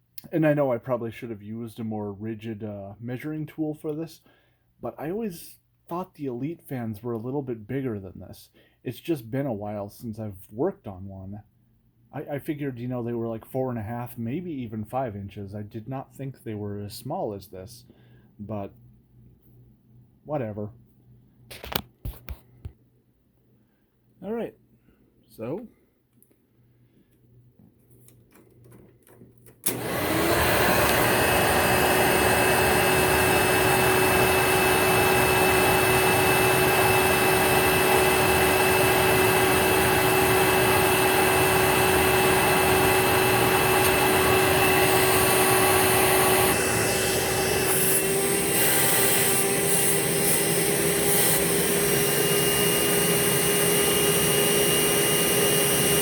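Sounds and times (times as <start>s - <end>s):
upright vacuum motor running: 29.6s - 56.0s.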